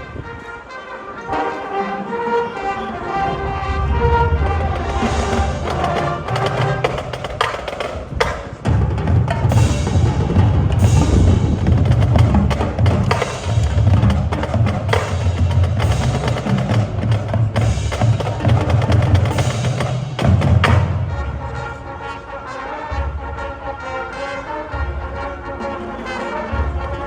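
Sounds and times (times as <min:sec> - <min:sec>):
low brass: 0:00.0 - 0:27.0
wind instruments holding chords: 0:00.0 - 0:27.0
rapid drum strikes: 0:04.2 - 0:21.3.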